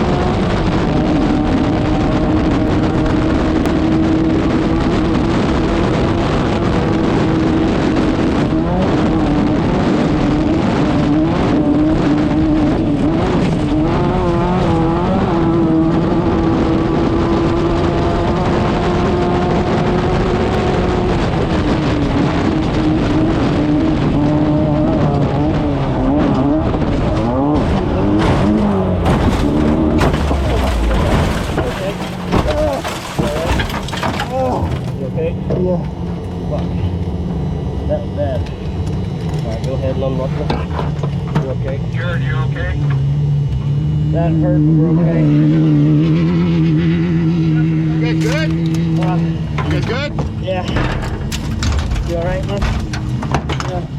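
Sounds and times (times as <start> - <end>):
race car engine revving: 0.0 - 53.9
rattling and knocks: 27.1 - 36.2, 49.5 - 53.9.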